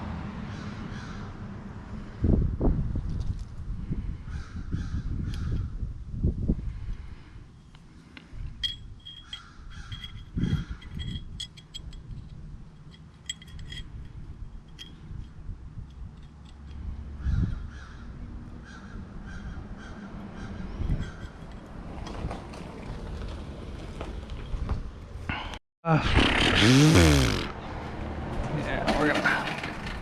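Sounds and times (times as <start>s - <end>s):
metal engine parts knocking: 8.6s - 16.8s
birds calling: 17.2s - 21.4s.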